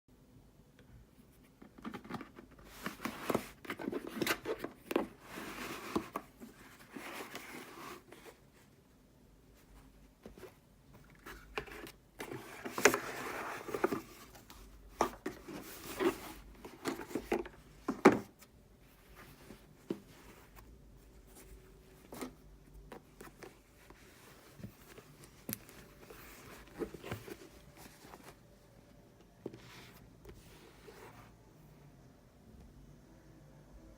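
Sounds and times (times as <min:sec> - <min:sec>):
packaging rustling and scraping: 0:01.8 - 0:08.4, 0:10.2 - 0:28.5.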